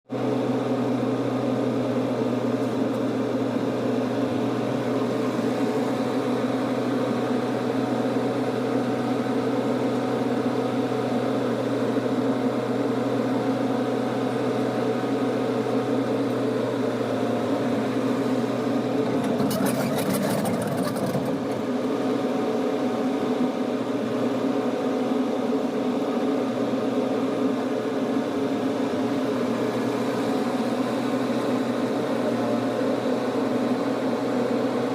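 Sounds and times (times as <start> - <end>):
excavator engine running: 14.5 - 22.3.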